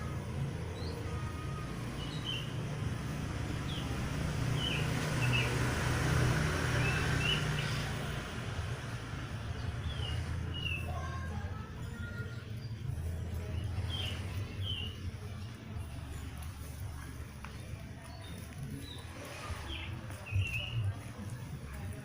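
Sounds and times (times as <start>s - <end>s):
low engine rumble: 0.0s - 22.0s
small birds chirping: 0.0s - 22.0s.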